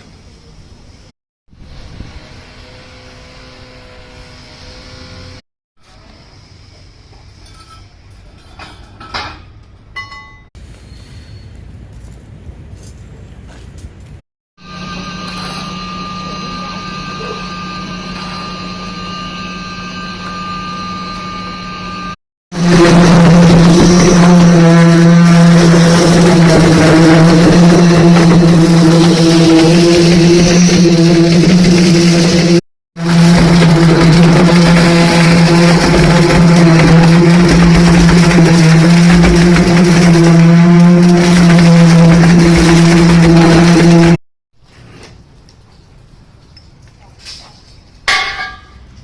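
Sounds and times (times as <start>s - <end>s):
motor humming steadily: 14.6s - 44.2s.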